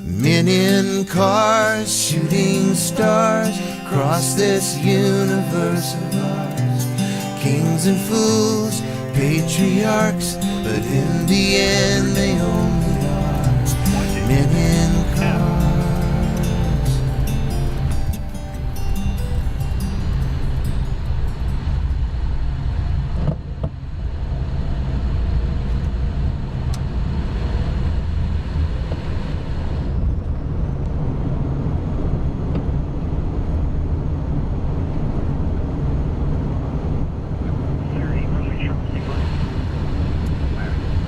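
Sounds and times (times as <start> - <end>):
jet engine rumble and hiss: 0.0 - 41.0.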